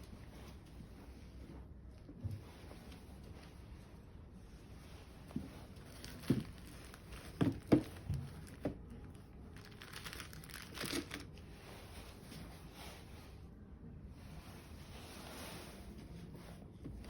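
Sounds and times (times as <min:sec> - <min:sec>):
packaging crinkling and rustling: 0:05.6 - 0:11.5.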